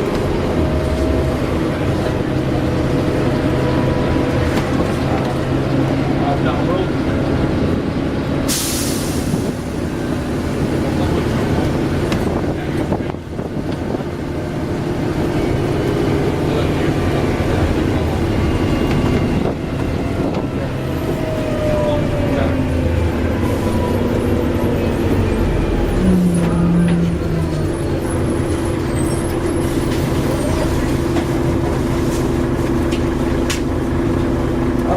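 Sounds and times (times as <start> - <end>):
bus diesel engine running: 0.0 - 34.9
air hiss: 8.5 - 9.5.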